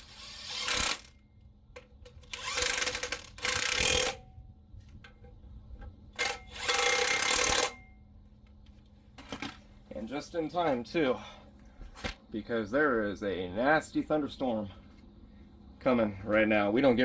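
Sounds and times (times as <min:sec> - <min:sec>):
power tool bursts: 0:00.0 - 0:01.2, 0:02.2 - 0:04.2, 0:06.2 - 0:07.8.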